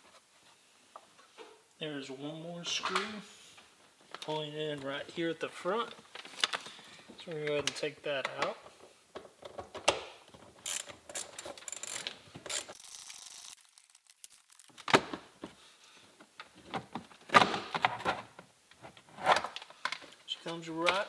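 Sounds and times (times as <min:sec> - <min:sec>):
socket ratchet clicking: 0:10.6 - 0:13.6.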